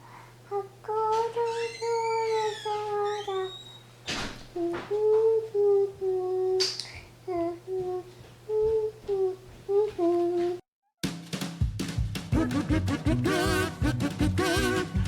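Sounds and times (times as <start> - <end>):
child humming a tune: 0.0 - 3.6, 4.6 - 10.6.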